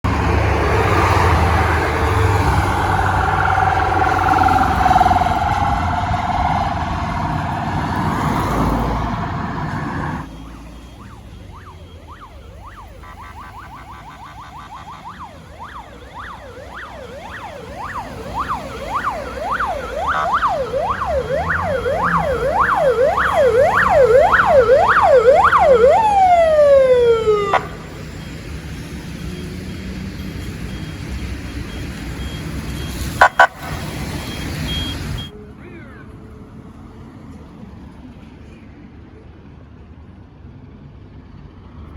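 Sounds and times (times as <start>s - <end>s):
dense phaser siren: 0.0s - 28.9s, 33.2s - 33.9s
road noise: 0.0s - 41.9s
police siren yelping: 0.1s - 28.4s, 33.2s - 33.8s.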